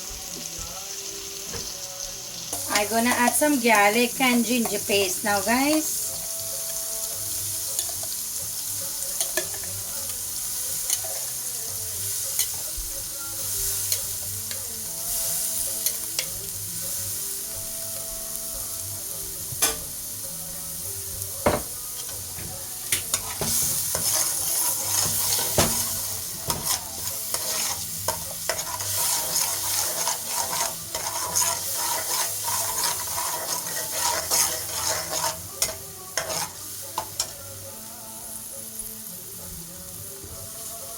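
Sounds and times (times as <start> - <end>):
paste sizzling in hot oil: 0.0 - 40.9
utensil clicking and scraping pan: 22.9 - 37.4.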